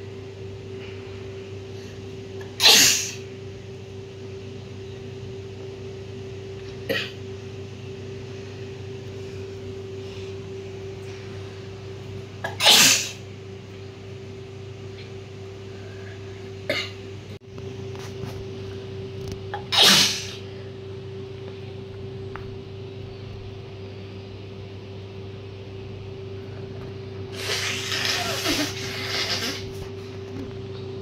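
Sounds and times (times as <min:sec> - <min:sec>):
steady background hum: 0:00.0 - 0:31.0
woman sneezing: 0:02.6 - 0:03.2, 0:12.5 - 0:13.2, 0:19.6 - 0:20.4, 0:27.4 - 0:29.7.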